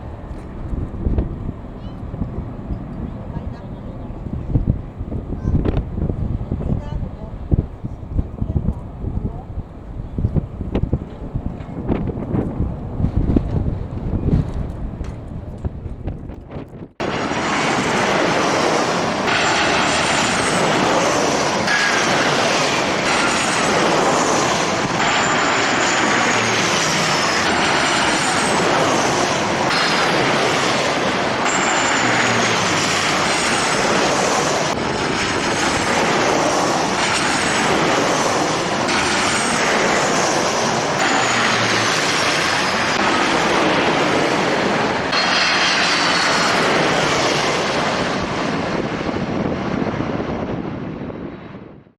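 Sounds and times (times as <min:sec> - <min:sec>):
jet airliner engine noise: 0:00.0 - 0:51.9
wind on microphone: 0:00.0 - 0:51.9
high whines sliding downward: 0:17.0 - 0:50.9.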